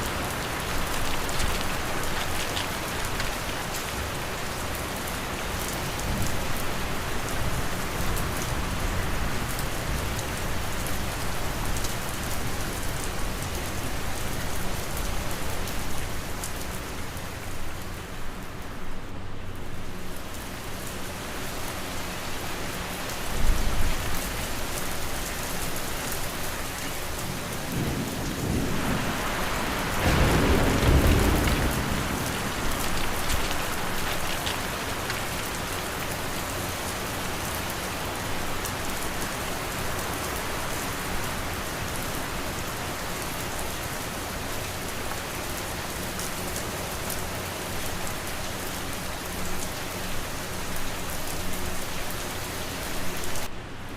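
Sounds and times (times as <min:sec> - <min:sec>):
fan and wind noise: 0:00.0 - 0:53.9
steady rain: 0:00.0 - 0:53.9
thunder rumbling: 0:27.3 - 0:36.1.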